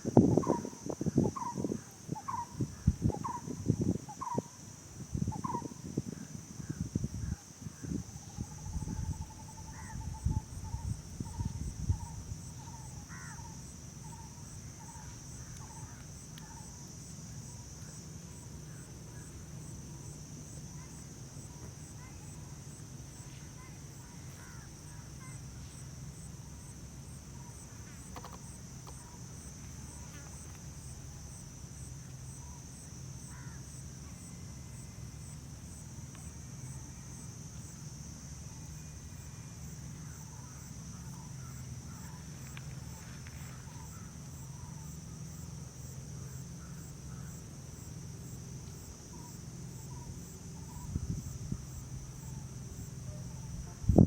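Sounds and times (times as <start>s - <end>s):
insects droning high-pitched: 0.0s - 54.0s
steady low hum: 0.0s - 54.0s
bird calling: 8.2s - 16.7s.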